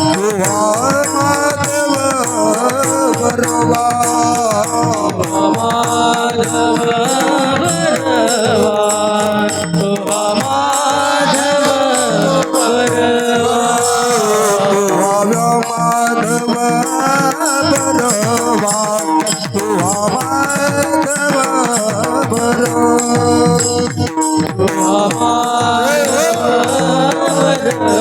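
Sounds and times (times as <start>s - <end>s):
hand percussion: 0.0s - 28.0s
person singing devotional song: 0.0s - 28.0s
held accompaniment drone: 24.9s - 28.0s.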